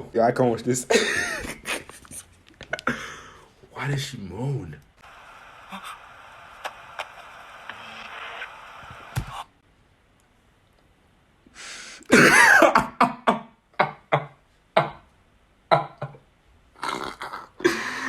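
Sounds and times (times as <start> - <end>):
person clearing throat: 12.1 - 13.0
person coughing: 12.1 - 13.0.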